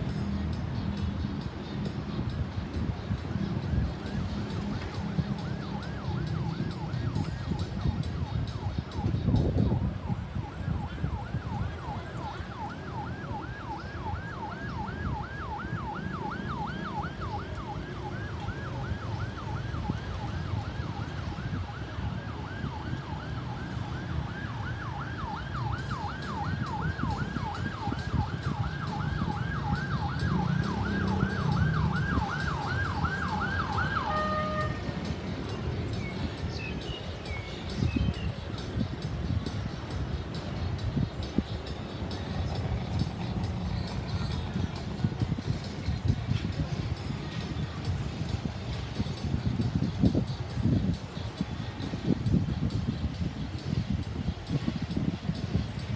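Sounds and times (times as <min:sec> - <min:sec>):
traffic rumble: 0:00.0 - 0:55.9
ambulance siren yelping: 0:03.6 - 0:40.0.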